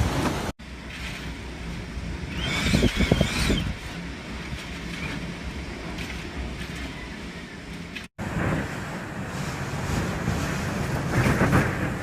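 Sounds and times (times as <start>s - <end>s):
strong wind buffeting microphone: 1.6s - 7.0s, 8.2s - 12.0s.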